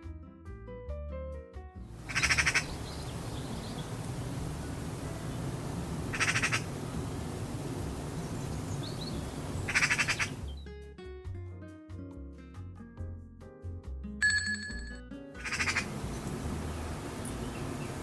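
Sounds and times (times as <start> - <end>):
field recording hiss: 1.9 - 10.6, 15.4 - 18.0
animal rasping call: 2.0 - 10.6, 15.4 - 18.0.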